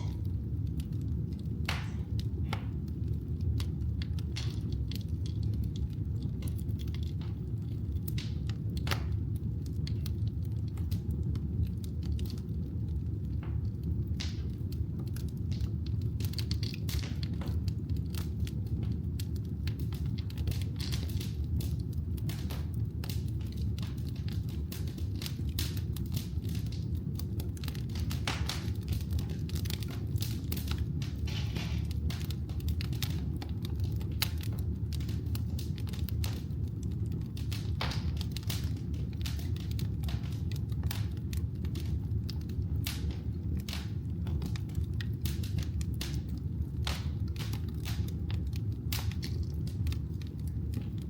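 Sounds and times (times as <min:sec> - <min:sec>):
fire crackling and popping: 0:00.0 - 0:51.0
low rumble of flames: 0:00.0 - 0:51.0.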